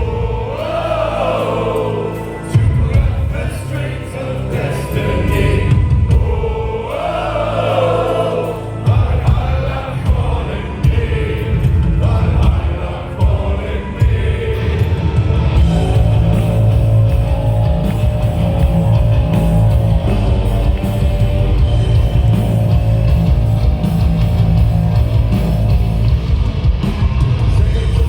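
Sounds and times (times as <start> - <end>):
heavy rock band playing: 0.0 - 28.0.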